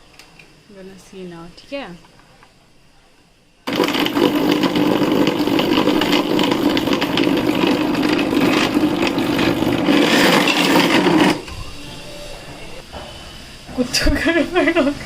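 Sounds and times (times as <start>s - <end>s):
food processor motor running: 3.7s - 11.4s.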